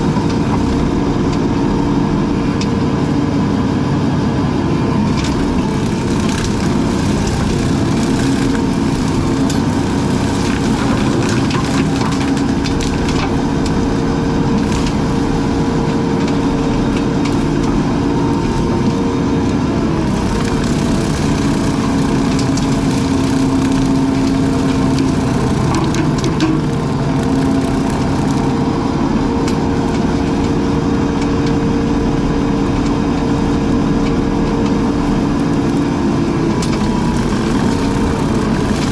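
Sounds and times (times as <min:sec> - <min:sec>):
brush cutter engine running: 0:00.0 - 0:38.9
brush and wood cracking: 0:05.2 - 0:13.9, 0:14.5 - 0:18.7, 0:19.5 - 0:28.8.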